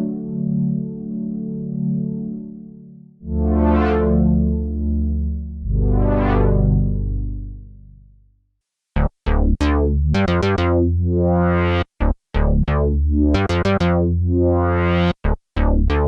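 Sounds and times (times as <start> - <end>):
plucky synthesizer notes: 3.2 - 8.2, 9.0 - 16.0.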